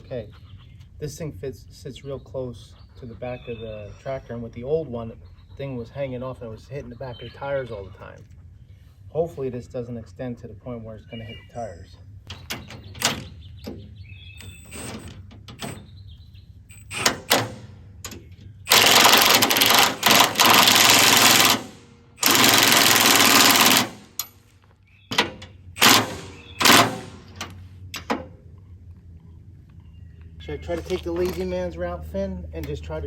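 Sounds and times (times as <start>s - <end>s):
handheld power tool running: 18.7s - 24.2s, 25.8s - 27.3s.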